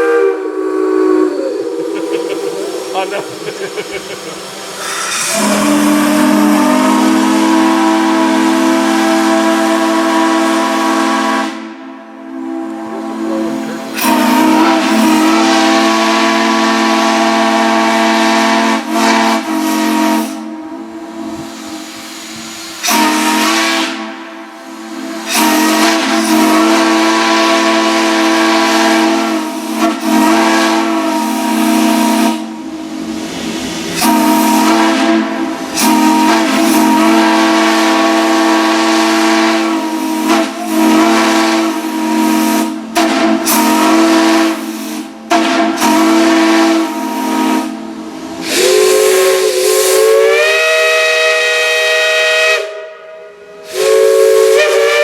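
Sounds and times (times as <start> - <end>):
steam hiss: 0.0 - 55.0
steam chime whistles blowing: 33.9 - 55.0.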